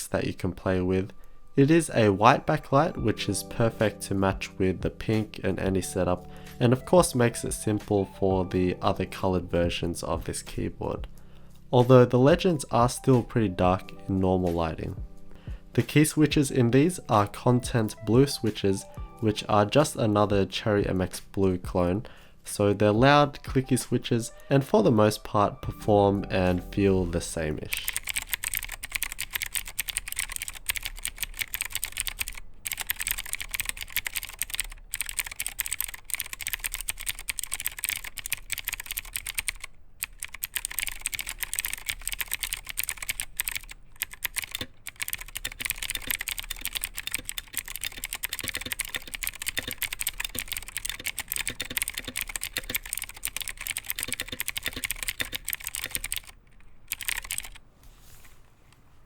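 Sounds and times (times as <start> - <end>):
clicky mechanical keyboard typing: 27.6 - 57.6.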